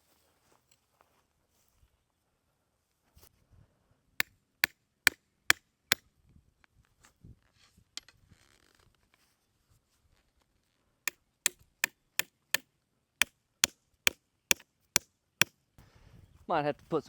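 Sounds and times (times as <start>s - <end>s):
sledgehammer striking fence post: 13.6s - 15.1s.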